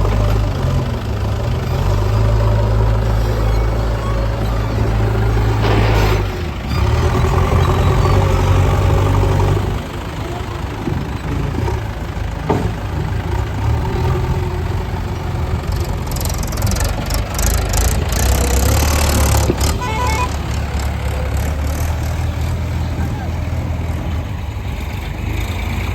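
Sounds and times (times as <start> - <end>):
heavy diesel machinery rumbling: 0.0 - 25.9
knocks and clatter: 10.8 - 13.3, 15.9 - 22.2.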